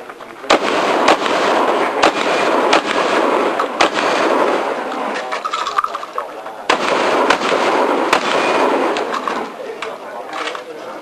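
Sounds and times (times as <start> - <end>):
shotgun shots with echo: 0.4 - 5.4, 6.6 - 9.6.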